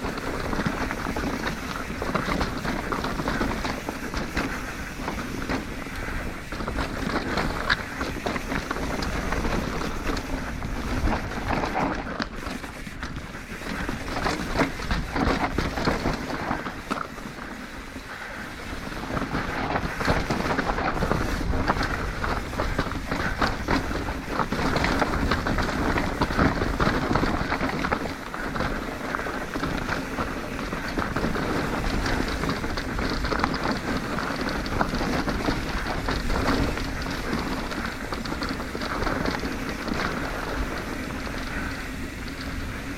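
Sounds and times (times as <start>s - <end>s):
bike rattling: 0.0s - 42.9s
bike tyres crunching on dirt: 0.0s - 42.9s
wind on microphone: 0.0s - 42.9s.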